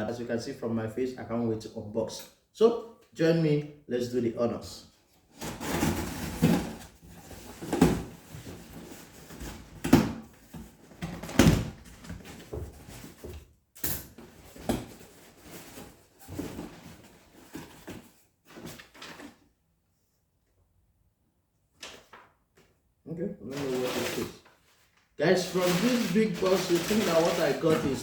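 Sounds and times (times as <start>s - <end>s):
cardboard scraping and rustling: 5.3s - 9.8s, 14.2s - 19.4s, 23.5s - 24.4s, 25.2s - 28.0s.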